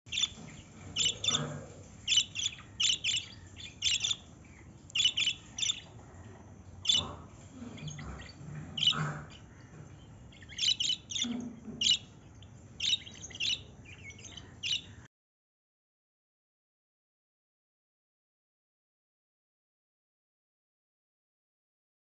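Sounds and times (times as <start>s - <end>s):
parrots chirping: 0.1s - 15.1s.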